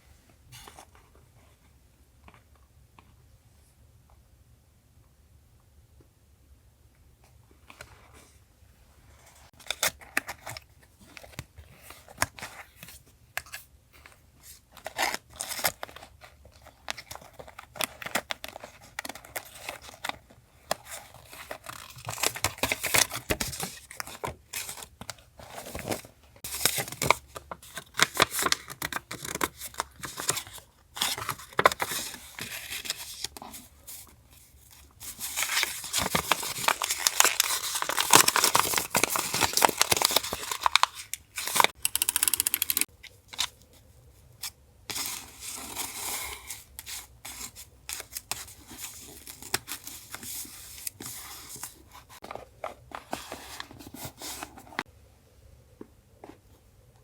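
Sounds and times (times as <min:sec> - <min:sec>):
paper crinkling and rustling: 0:09.3 - 0:41.8, 0:44.9 - 0:54.9.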